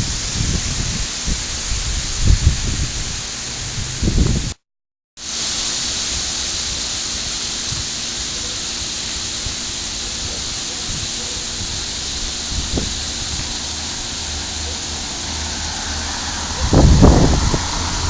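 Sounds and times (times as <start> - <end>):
low wind buffeting: 0.0 - 4.6, 10.9 - 18.0
strong wind hissing: 0.0 - 4.6, 5.2 - 18.0.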